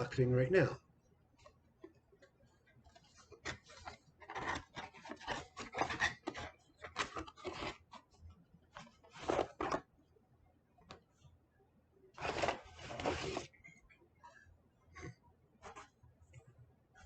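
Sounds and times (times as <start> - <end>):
packaging rubbing and scraping: 3.2 - 8.0, 9.0 - 9.8, 12.2 - 13.6.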